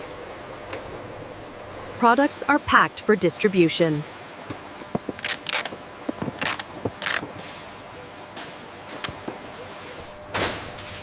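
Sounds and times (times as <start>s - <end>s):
steady machinery noise: 0.0s - 11.0s
sharp mechanical clicks: 5.2s - 7.3s.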